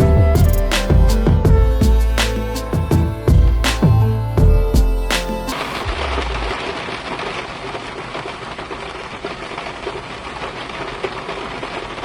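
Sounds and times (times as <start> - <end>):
steady rain: 5.5 - 12.0.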